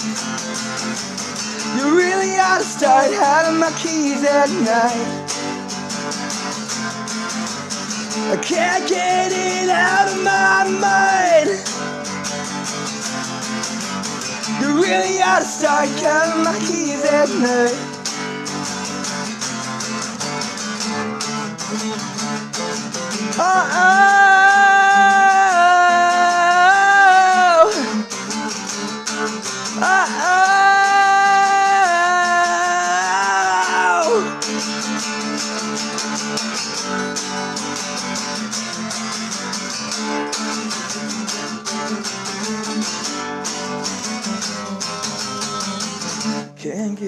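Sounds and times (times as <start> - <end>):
acoustic guitar playing: 0.0 - 46.8
wordless vocal notes: 1.7 - 5.2, 8.2 - 11.8, 14.5 - 18.0, 23.3 - 28.3, 29.5 - 34.6.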